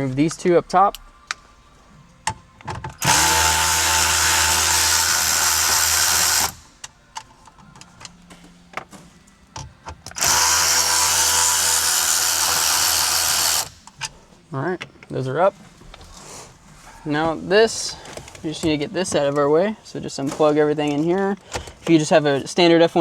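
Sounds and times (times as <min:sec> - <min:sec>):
power driver motor spinning: 0:03.0 - 0:06.8, 0:10.1 - 0:14.0.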